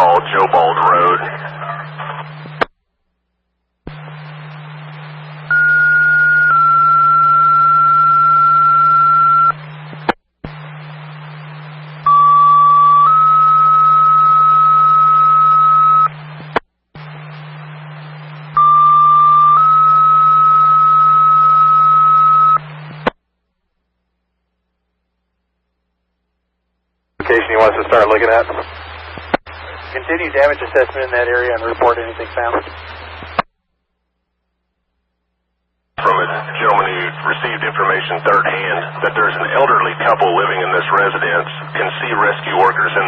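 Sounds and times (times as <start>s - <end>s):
radio hiss and low hum: 0.0s - 2.8s, 3.6s - 23.3s, 24.4s - 33.6s, 35.2s - 43.0s
two-tone paging tones: 5.5s - 9.5s.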